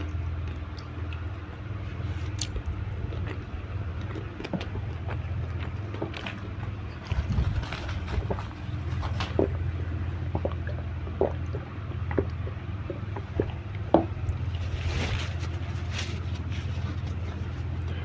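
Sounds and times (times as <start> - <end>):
wet chewing and lip smacks: 0.0 - 1.6, 2.2 - 7.2
steady low hum: 0.0 - 18.0.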